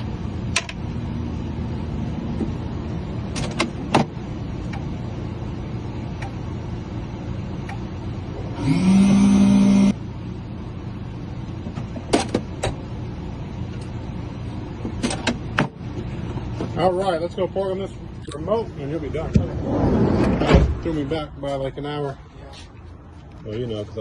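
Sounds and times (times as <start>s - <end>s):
steady low hum: 0.0s - 24.0s
small electric motor whirring: 8.5s - 10.0s.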